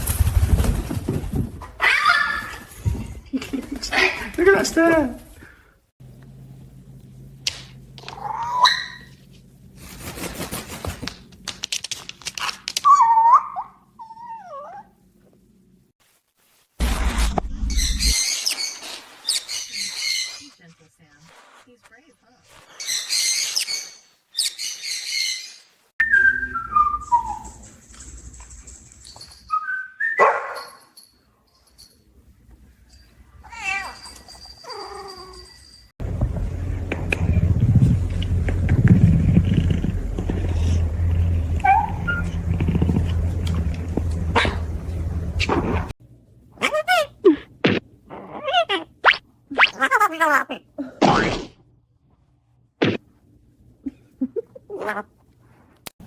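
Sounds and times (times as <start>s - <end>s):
pet animal cries: 8.0s - 9.1s
steady low hum: 36.0s - 46.0s.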